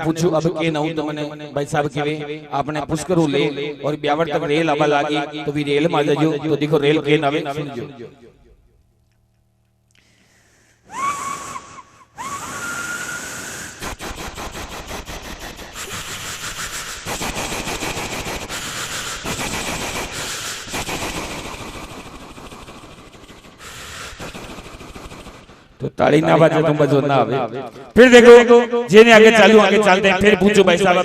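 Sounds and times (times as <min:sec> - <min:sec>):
man voicing hissing train chuffs: 0:10.2 - 0:26.0.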